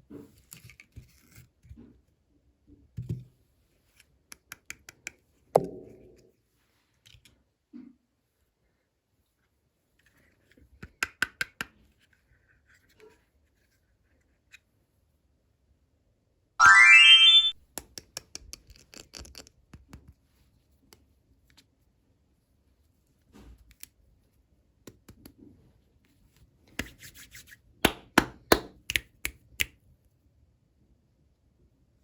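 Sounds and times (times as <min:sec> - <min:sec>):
rising tone: 0:16.6 - 0:17.6.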